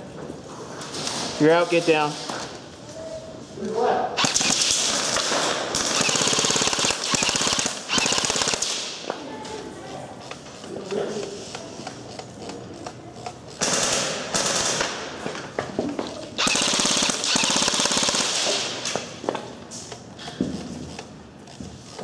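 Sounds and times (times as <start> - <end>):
airsoft guns firing bursts: 4.2 - 9.1, 13.5 - 15.2, 16.4 - 19.2.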